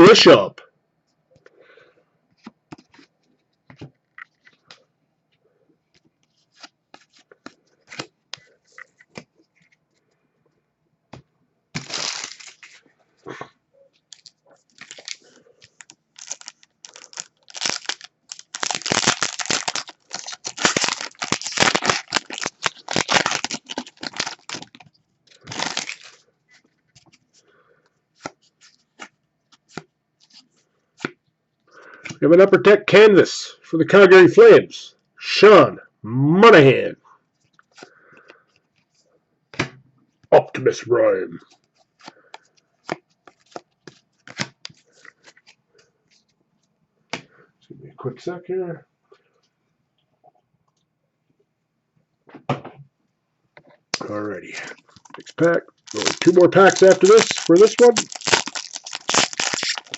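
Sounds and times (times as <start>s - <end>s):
foil wrapper tearing and crinkling: 11.8s - 12.8s, 14.1s - 26.2s, 54.7s - 59.9s
cards clicking: 42.0s - 44.8s, 54.9s - 58.0s.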